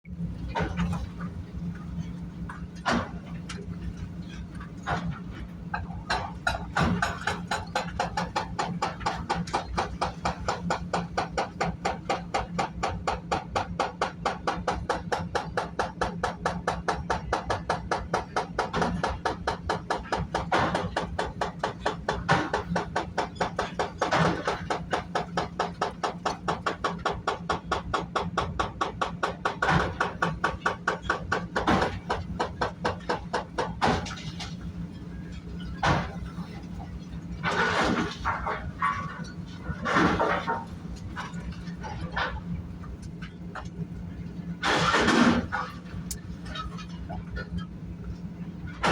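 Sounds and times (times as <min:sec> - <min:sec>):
hydraulic breaker pounding concrete: 0:02.7 - 0:43.7, 0:44.6 - 0:47.5, 0:48.6 - 0:48.9
excavator engine drone: 0:33.7 - 0:48.9.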